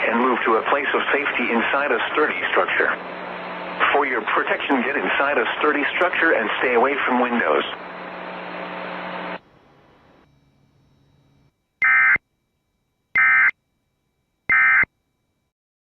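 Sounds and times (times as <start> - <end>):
radio hiss: 0.0 - 9.4
low hum: 0.0 - 15.5
digital data tone bursts: 11.8 - 12.2, 13.2 - 13.6, 14.5 - 14.9.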